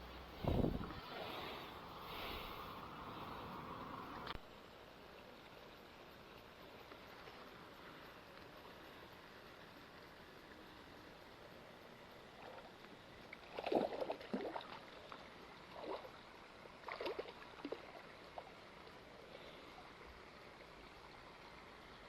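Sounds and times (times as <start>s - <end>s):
low steady hiss: 0.0s - 22.0s
water splashing and sloshing: 12.3s - 18.9s.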